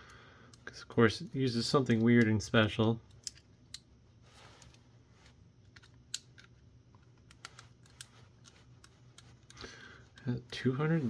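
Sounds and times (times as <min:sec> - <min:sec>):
low background hum: 0:00.0 - 0:11.0
small plastic parts clicking: 0:01.9 - 0:03.9, 0:05.6 - 0:10.6.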